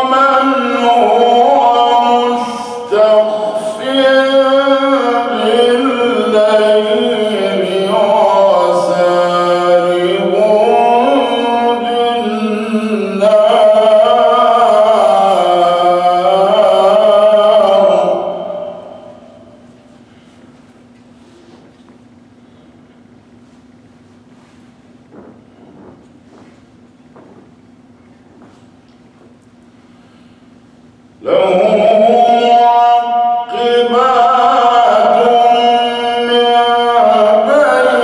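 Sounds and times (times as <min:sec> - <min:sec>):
man reciting melodically: 0:00.0 - 0:19.7, 0:31.2 - 0:38.0.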